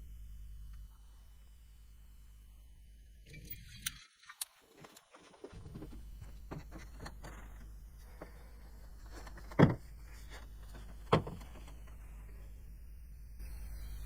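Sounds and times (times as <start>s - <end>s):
low steady hum: 0.0s - 14.0s
faint clicks and handling noises: 3.8s - 12.6s.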